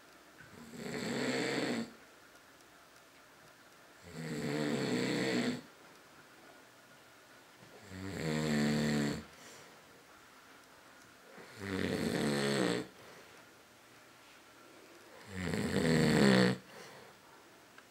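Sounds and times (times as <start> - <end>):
quiet breaths: 0.0 - 17.9
man snoring: 0.6 - 1.9, 4.0 - 5.7, 7.8 - 9.3, 11.4 - 12.9, 15.2 - 16.6.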